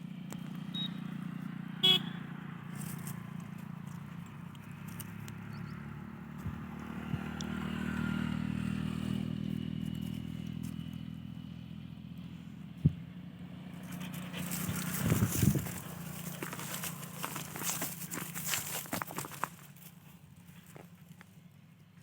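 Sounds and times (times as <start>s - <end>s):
low motor hum: 0.0s - 22.0s
crackling rustling noise: 14.2s - 21.3s.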